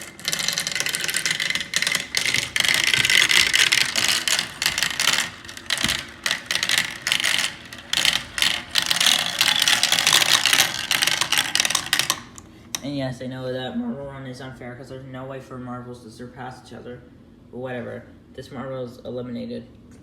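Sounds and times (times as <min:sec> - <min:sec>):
marbles rattling down a track: 0:00.0 - 0:12.9.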